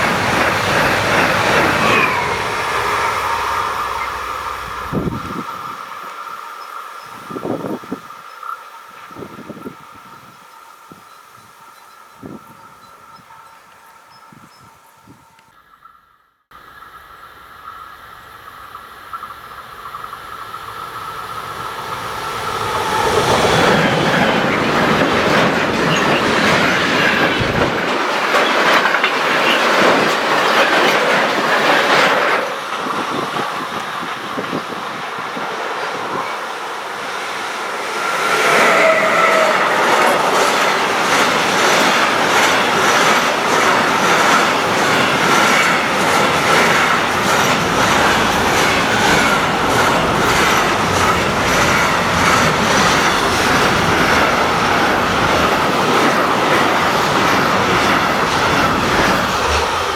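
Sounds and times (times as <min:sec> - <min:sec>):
train wheels clattering over rail joints: 0:00.0 - 0:05.5, 0:21.9 - 0:36.4, 0:37.7 - 0:59.9
train passing: 0:00.0 - 0:15.8, 0:16.6 - 0:59.9.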